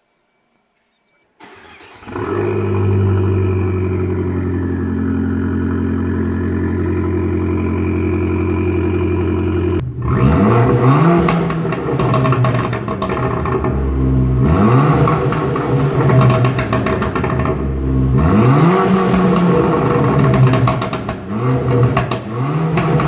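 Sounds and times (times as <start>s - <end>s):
car engine starting and idling: 1.4s - 23.0s
engine revving: 1.4s - 23.0s
exhaust pops: 9.8s - 23.0s.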